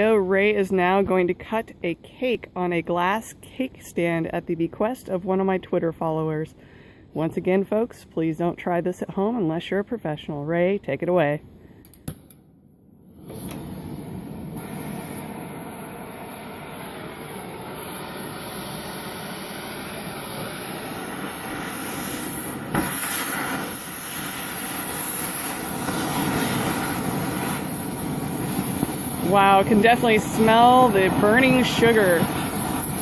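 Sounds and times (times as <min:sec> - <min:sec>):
cutting torch flame hissing: 0:13.1 - 0:33.0.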